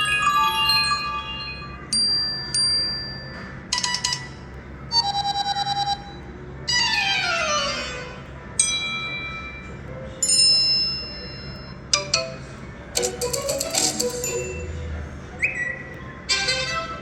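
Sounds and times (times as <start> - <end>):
phone ringtone chimes on loudspeaker: 0.0 - 3.2.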